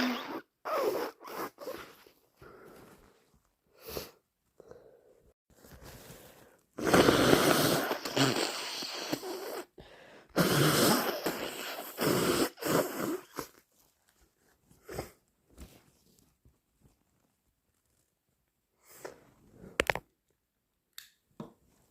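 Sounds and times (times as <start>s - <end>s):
person blowing nose: 0.0s - 2.2s, 6.8s - 13.6s.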